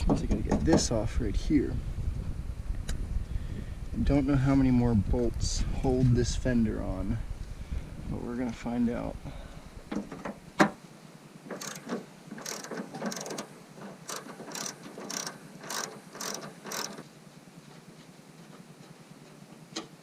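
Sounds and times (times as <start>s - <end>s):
ratchet wrench clicking: 11.6s - 13.5s, 14.1s - 17.0s.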